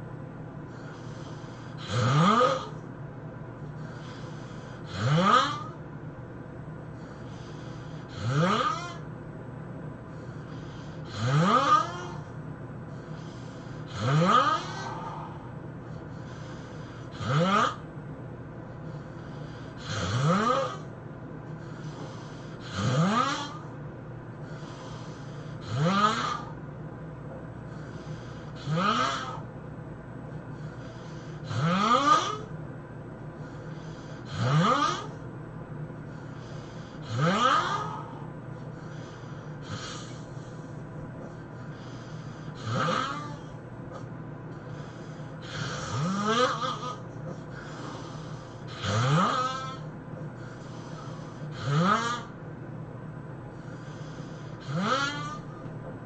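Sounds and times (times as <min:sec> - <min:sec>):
person snoring heavily: 0:00.7 - 0:02.8, 0:03.8 - 0:05.8, 0:07.0 - 0:09.0, 0:10.2 - 0:12.4, 0:13.0 - 0:15.6, 0:16.2 - 0:17.9, 0:19.0 - 0:20.9, 0:21.7 - 0:23.7, 0:24.5 - 0:26.6, 0:27.7 - 0:29.5, 0:30.6 - 0:32.5, 0:33.4 - 0:35.2, 0:36.2 - 0:52.4, 0:53.5 - 0:55.7.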